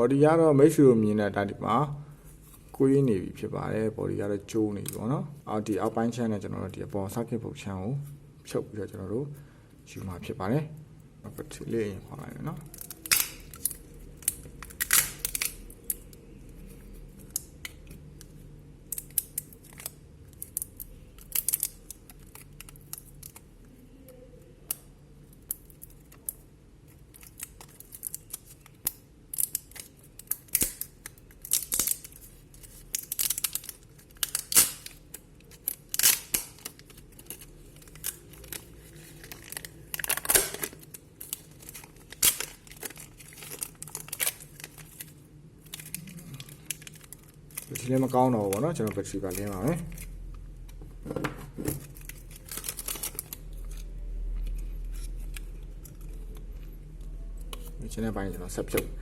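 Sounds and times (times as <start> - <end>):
smartphone parts clicking and scraping: 46.9 - 58.9.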